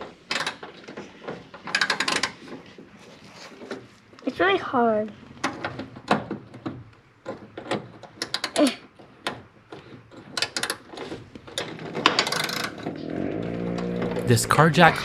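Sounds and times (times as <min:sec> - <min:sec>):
wrench clicking on bolts: 0:12.2 - 0:12.8.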